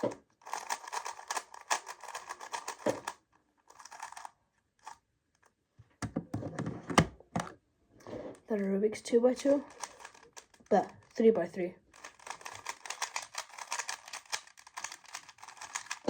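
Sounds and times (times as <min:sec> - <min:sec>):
speedcube layers clicking: 0:00.0 - 0:05.0, 0:09.4 - 0:11.3, 0:11.9 - 0:16.0.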